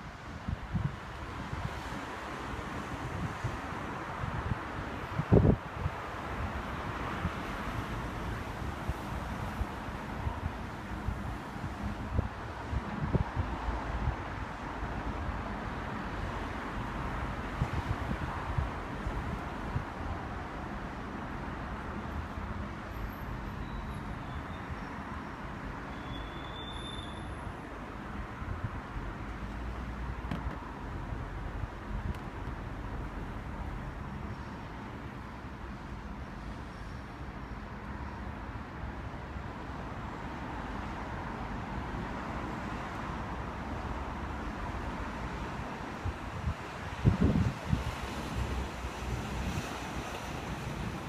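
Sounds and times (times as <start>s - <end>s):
vehicle rumble: 0.0s - 51.0s.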